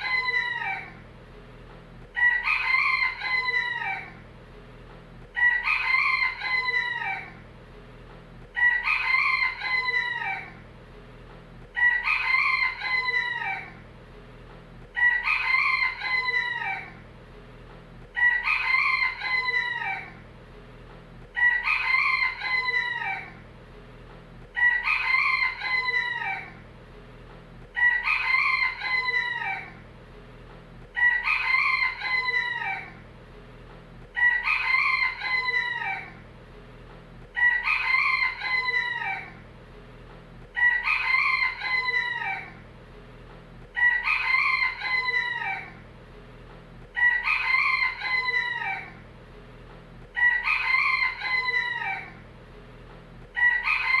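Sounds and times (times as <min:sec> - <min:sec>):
rooster crowing: 0:00.0 - 0:01.0, 0:02.0 - 0:04.2, 0:05.2 - 0:07.4, 0:08.5 - 0:10.6, 0:11.7 - 0:13.8, 0:14.9 - 0:17.0, 0:18.0 - 0:20.2, 0:21.3 - 0:23.4, 0:24.5 - 0:26.6, 0:27.6 - 0:29.8, 0:30.8 - 0:33.0, 0:34.0 - 0:36.2, 0:37.2 - 0:39.4, 0:40.5 - 0:42.6, 0:43.7 - 0:45.8, 0:46.9 - 0:49.0, 0:50.1 - 0:52.2, 0:53.3 - 0:54.0.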